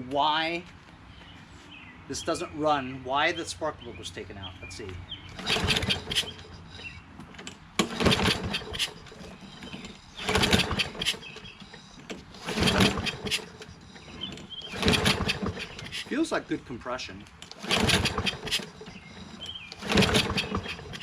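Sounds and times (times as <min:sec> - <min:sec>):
engine turning over: 0:05.3 - 0:16.3, 0:17.4 - 0:21.0
lawn mower recoil starter pulls: 0:05.3 - 0:16.3, 0:17.3 - 0:21.0.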